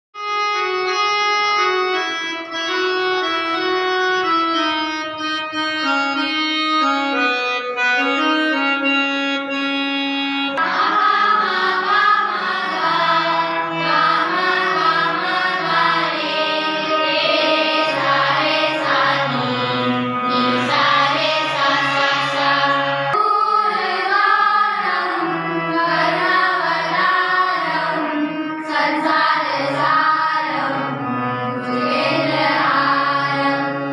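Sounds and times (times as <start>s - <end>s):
organ-like held notes: 0.2s - 33.9s
ensemble with singing voices: 10.6s - 31.0s, 31.6s - 33.8s.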